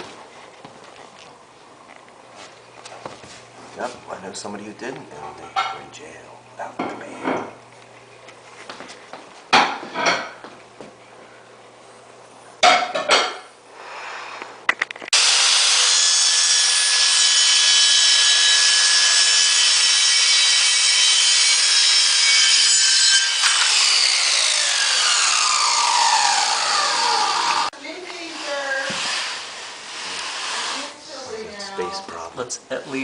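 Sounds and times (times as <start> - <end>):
power saw cutting: 15.1 - 31.3.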